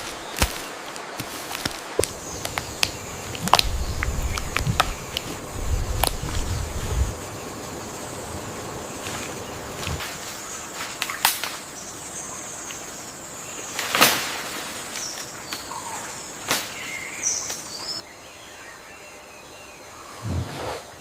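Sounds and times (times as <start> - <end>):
sharp cracks: 0.0 - 6.5
bird chirps: 2.0 - 7.0.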